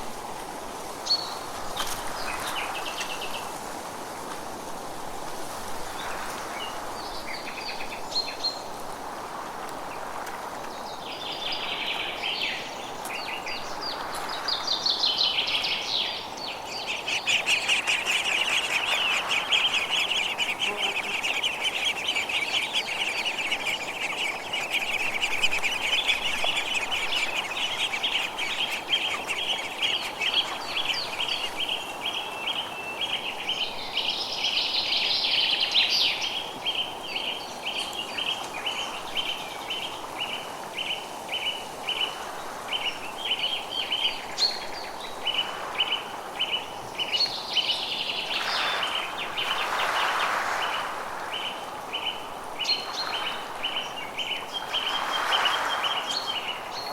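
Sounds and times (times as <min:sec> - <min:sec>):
steady background hiss: 0:00.0 - 0:56.9
birds chirping and trilling: 0:10.8 - 0:42.1.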